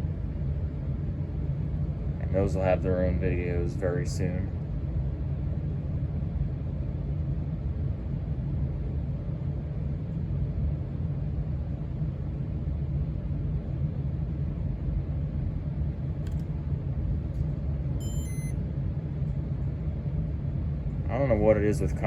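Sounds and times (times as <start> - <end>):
ceiling fan running: 0.0 - 22.0
faint click: 16.2 - 16.5
short high electronic beeps: 18.0 - 18.6.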